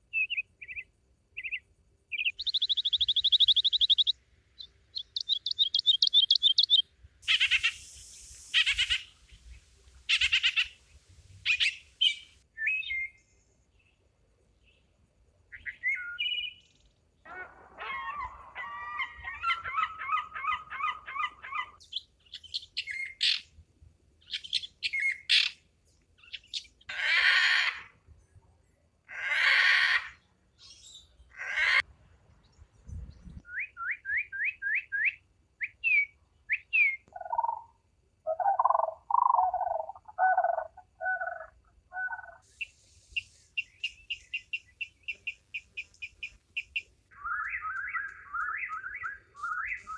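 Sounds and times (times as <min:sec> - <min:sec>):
birds chirping and trilling: 0:00.2 - 0:07.9, 0:15.5 - 0:23.5, 0:35.7 - 0:37.7, 0:38.3 - 0:49.9
harsh bird calls: 0:05.0 - 0:09.2.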